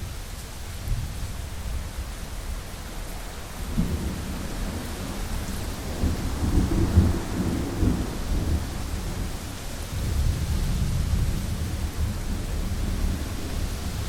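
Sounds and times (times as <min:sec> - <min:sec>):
heavy rain hiss: 0:00.0 - 0:14.0
thunder rumbling: 0:03.6 - 0:14.0.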